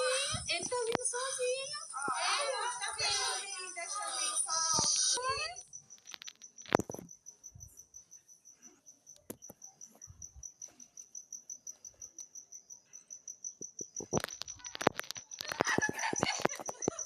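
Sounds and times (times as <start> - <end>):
cricket chirping: 0.0 - 17.0.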